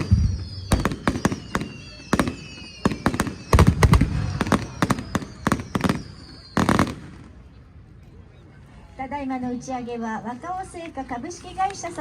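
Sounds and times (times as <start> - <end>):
faint descending whistles: 0.0 - 6.8
fireworks bangs and crackles: 0.0 - 7.5.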